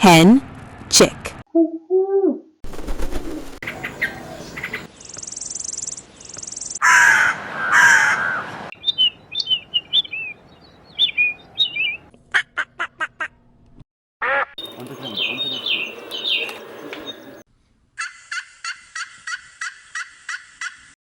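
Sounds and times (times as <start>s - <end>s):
quick high bird chirps: 2.7s - 4.8s
crow-like caws: 6.8s - 8.4s.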